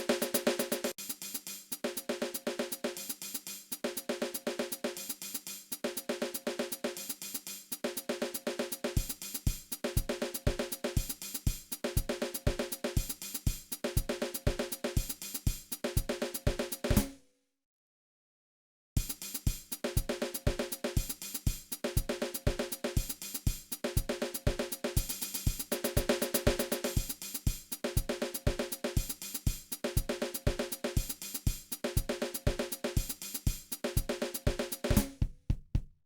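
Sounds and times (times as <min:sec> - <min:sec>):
drum kit groove: 0:00.0 - 0:17.2, 0:19.0 - 0:36.0.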